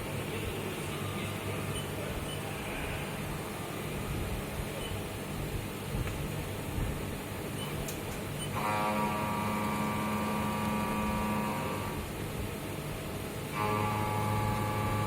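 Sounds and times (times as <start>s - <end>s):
multi-tone whine: 7.4s - 12.3s, 13.5s - 15.0s
grinding machine humming: 8.6s - 12.2s, 13.5s - 15.0s.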